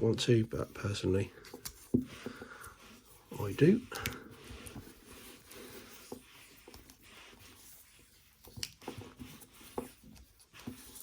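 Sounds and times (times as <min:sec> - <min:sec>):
tape rustling and clicking: 0:01.4 - 0:02.8, 0:08.1 - 0:11.0.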